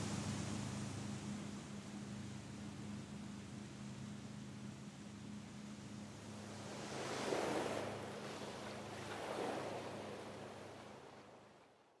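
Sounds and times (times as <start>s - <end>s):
sea water rushing: 6.4s - 11.5s.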